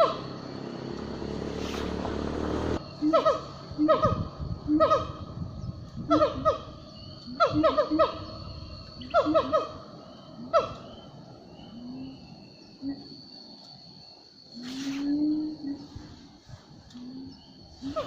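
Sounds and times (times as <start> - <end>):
wild animal calling: 3.0 - 5.4, 6.0 - 12.2, 16.9 - 18.0.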